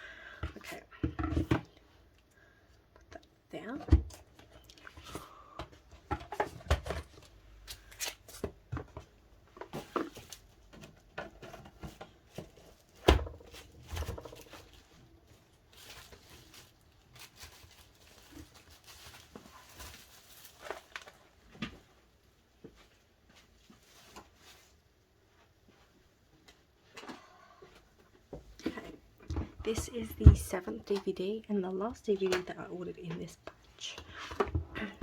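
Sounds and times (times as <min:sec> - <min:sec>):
card and plastic packaging handled: 0:04.2 - 0:21.8, 0:23.4 - 0:24.8.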